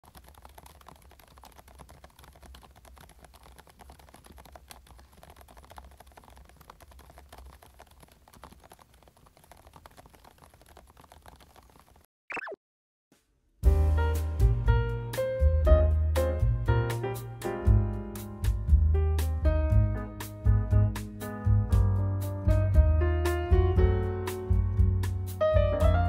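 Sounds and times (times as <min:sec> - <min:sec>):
typing on mechanical keyboard: 0:00.0 - 0:12.1.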